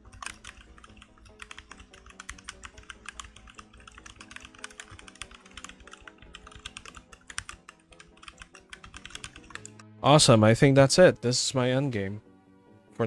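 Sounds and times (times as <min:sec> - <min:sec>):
faint background music: 0:00.0 - 0:13.0
mechanical keyboard key clicks: 0:00.1 - 0:09.8.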